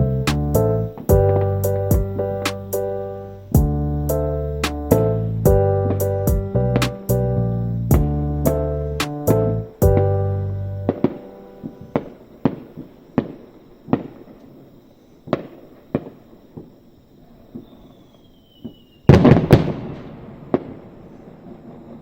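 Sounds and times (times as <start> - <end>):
fireworks bangs echoing: 10.9 - 14.4, 15.2 - 16.7, 18.6 - 22.0.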